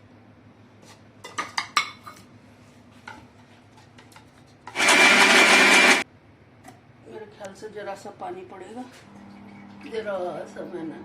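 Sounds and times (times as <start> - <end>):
mixer grinder whirring: 4.7 - 6.0.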